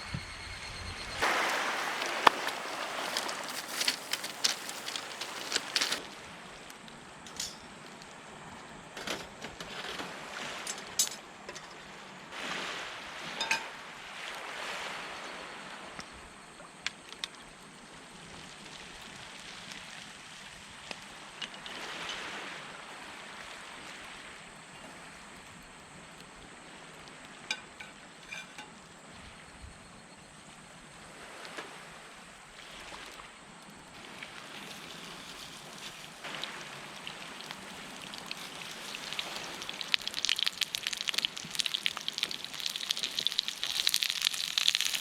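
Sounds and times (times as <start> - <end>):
surf washing on shore: 1.2 - 6.8, 12.3 - 16.0, 33.9 - 45.0.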